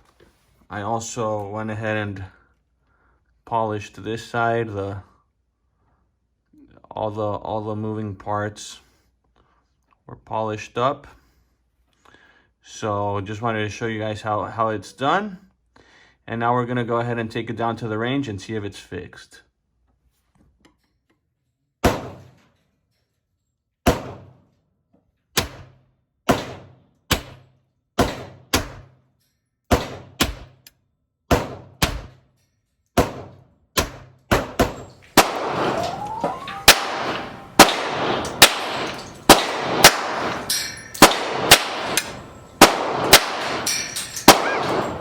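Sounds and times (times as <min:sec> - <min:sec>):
pistol shots: 0:33.0 - 0:45.0
steady background noise: 0:34.8 - 0:45.0.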